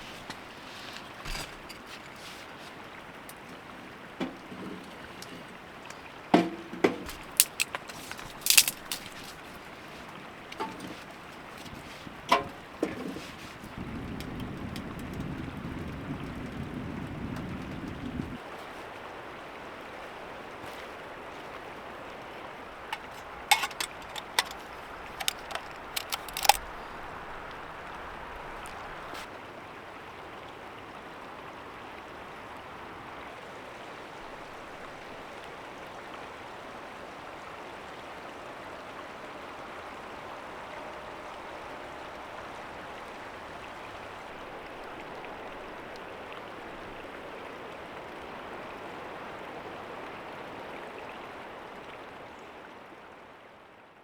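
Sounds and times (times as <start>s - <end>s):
creek water flowing: 0.0s - 54.0s
sharp clicks or knocks: 6.4s - 9.1s, 23.0s - 24.6s, 25.2s - 26.6s.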